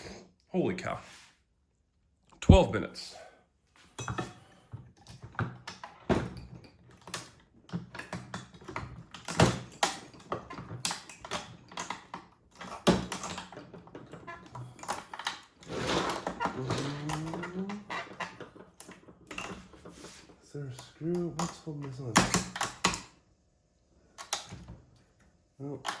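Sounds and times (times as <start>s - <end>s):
rustling clatter: 3.8s - 20.4s.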